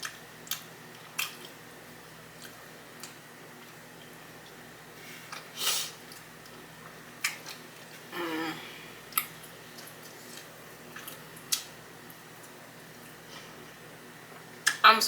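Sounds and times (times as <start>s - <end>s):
person humming: 8.1s - 8.8s.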